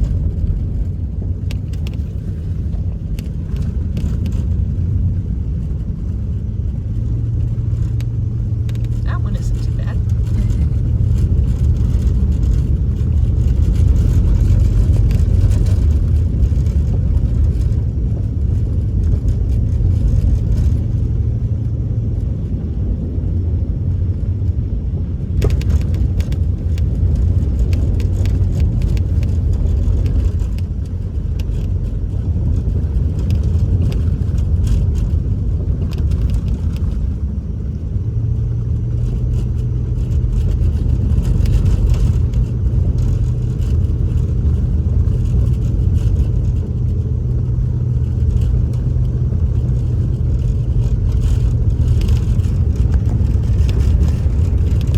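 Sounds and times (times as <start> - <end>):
truck engine and road noise: 0.0 - 54.9
small ticks and clicks: 25.4 - 37.3, 38.8 - 54.9.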